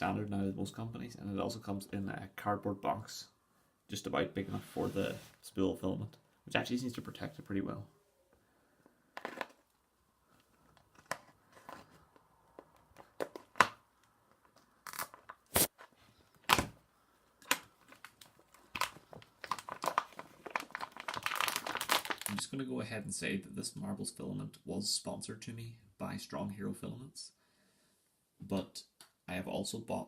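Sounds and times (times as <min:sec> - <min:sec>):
plastic packaging crinkling and tearing: 0:12.9 - 0:16.8, 0:17.4 - 0:22.5.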